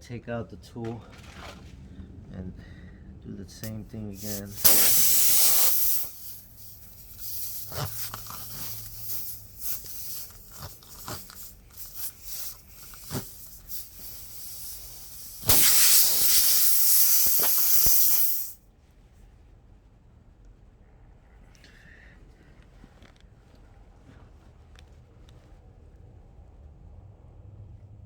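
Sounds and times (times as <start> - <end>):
air hissing out of tire: 3.6 - 18.6.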